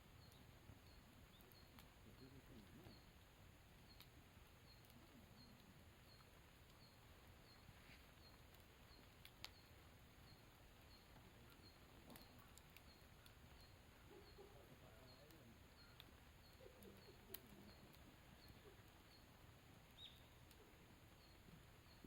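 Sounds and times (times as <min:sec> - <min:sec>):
campfire crackling: 0:00.0 - 0:22.0
fire popping: 0:00.0 - 0:22.0.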